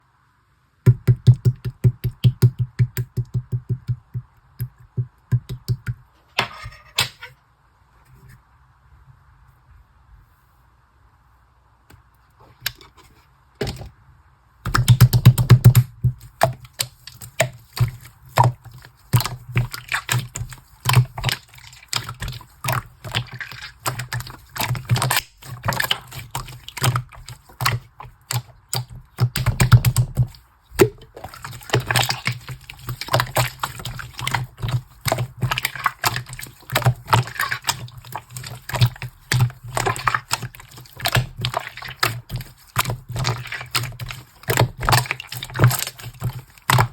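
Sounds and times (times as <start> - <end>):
slime squished by hand: 14.7 - 46.9.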